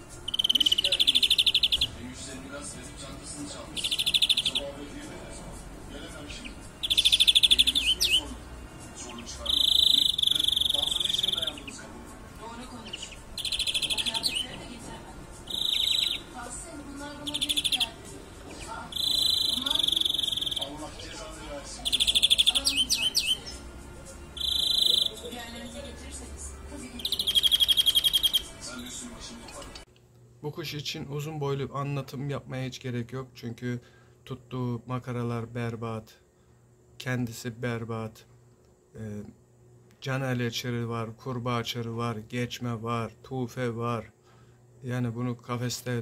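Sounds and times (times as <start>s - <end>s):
finch rattling trill: 0.2s - 1.9s, 3.7s - 4.7s, 6.4s - 8.3s, 9.1s - 11.8s, 12.7s - 14.8s, 15.4s - 16.4s, 17.1s - 18.1s, 18.8s - 20.9s, 21.8s - 23.6s, 24.4s - 26.0s, 27.0s - 29.0s
faint bird chirps: 0.2s - 2.0s, 3.7s - 4.8s, 6.2s - 11.8s, 12.7s - 14.7s, 15.4s - 16.4s, 17.2s - 18.0s, 18.6s - 20.8s, 21.8s - 23.7s, 24.3s - 25.9s, 27.0s - 29.0s.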